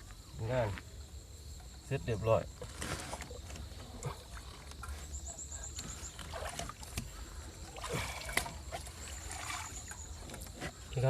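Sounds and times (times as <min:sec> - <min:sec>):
water splashing and sloshing: 0:02.6 - 0:11.0.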